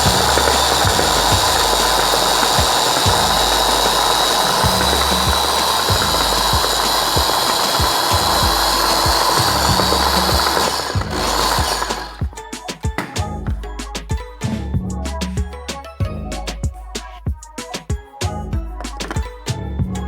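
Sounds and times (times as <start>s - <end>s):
blender running: 0.0s - 12.4s.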